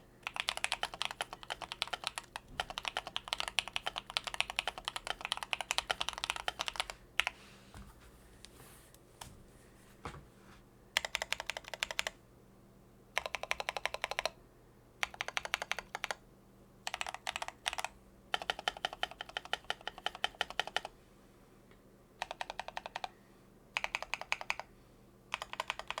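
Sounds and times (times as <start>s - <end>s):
mechanical keyboard typing: 0.2s - 7.4s, 11.0s - 12.2s, 13.2s - 14.4s, 15.0s - 16.2s, 16.8s - 20.9s, 22.2s - 23.1s, 23.8s - 24.7s, 25.3s - 26.0s.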